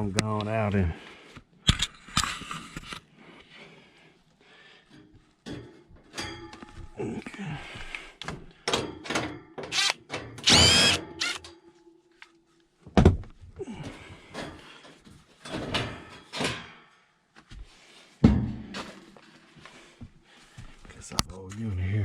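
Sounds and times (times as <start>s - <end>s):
metal knocks and thunks: 18.2s - 18.8s.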